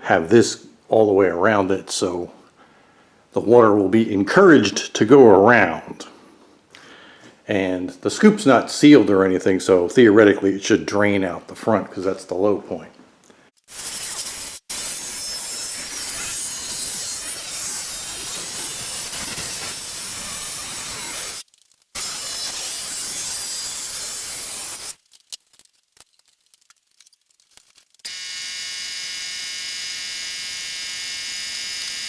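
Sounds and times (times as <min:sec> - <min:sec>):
abrasive rasping on metal: 0:13.7 - 0:21.4, 0:22.0 - 0:25.0
small power tool whining: 0:14.6 - 0:21.4, 0:22.0 - 0:25.0, 0:28.1 - 0:32.0.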